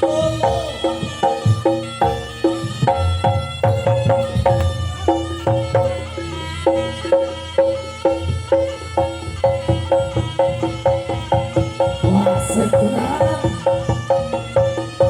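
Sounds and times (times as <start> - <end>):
hand-drum beats: 0.0 - 15.0
struck pitched metal notes: 0.0 - 15.0.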